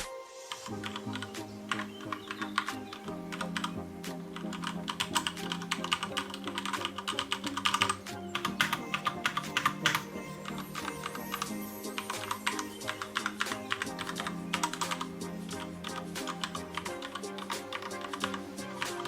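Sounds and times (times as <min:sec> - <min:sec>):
background music sustained notes: 0:00.0 - 0:19.0
keyboard keystroke clicks: 0:04.6 - 0:11.5.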